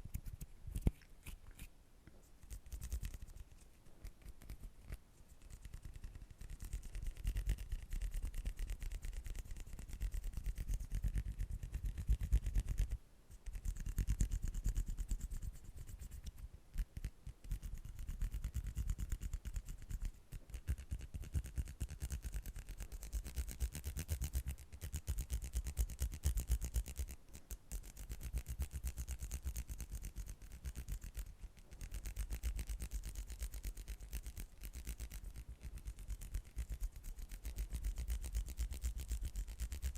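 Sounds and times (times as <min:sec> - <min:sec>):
hands rubbing against microphone: 0:00.0 - 0:39.9.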